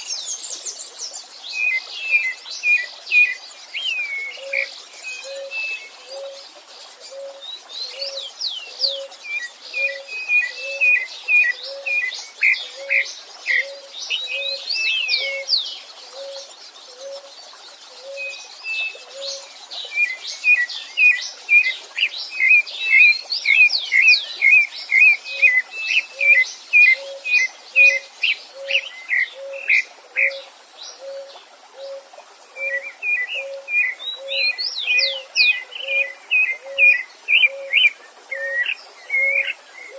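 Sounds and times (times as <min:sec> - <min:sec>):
birds singing: 0:00.0 - 0:39.9
faint stream hiss: 0:00.0 - 0:39.9.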